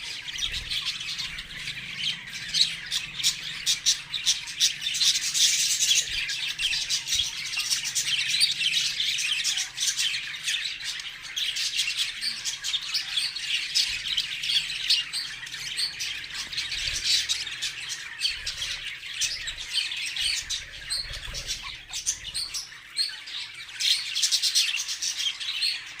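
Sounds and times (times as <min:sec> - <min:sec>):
budgerigar chattering: 0:12.1 - 0:23.2.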